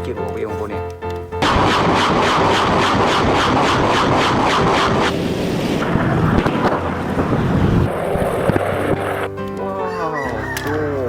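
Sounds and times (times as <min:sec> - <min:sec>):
rocket launcher salvo roar: 0:01.4 - 0:09.2
dull rumble: 0:01.4 - 0:09.6.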